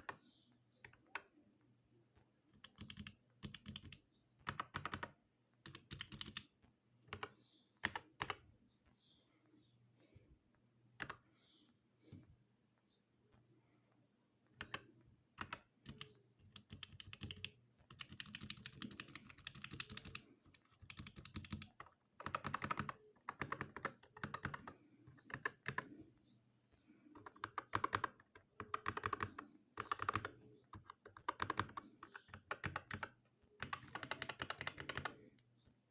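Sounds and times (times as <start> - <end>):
mechanical keyboard typing: 2.6 - 6.5, 15.4 - 25.9, 27.2 - 35.2.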